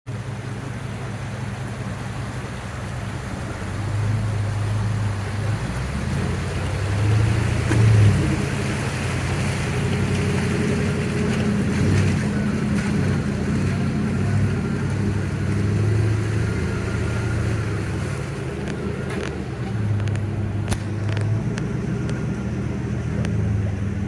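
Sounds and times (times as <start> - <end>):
off-road vehicle engine running: 0.0 - 24.0.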